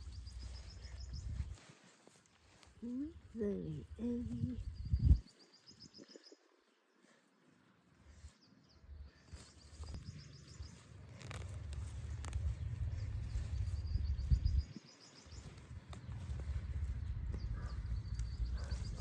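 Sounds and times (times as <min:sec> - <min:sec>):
steady low rumble: 0:00.0 - 0:01.6, 0:09.8 - 0:19.0.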